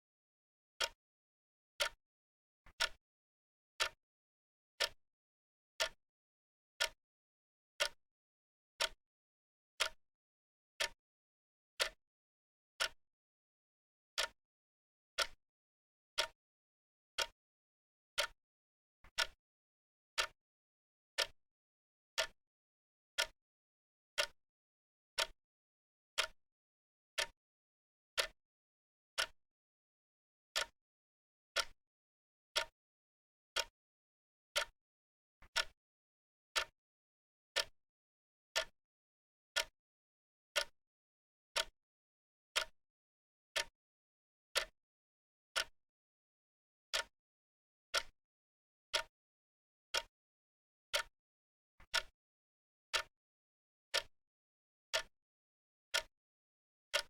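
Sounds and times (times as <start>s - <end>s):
clock ticking: 2.7s - 3.0s, 17.2s - 17.4s, 19.2s - 19.4s, 20.2s - 20.4s, 22.2s - 22.4s, 25.2s - 25.4s, 26.2s - 26.4s, 30.6s - 30.8s, 35.5s - 35.7s, 51.9s - 52.1s.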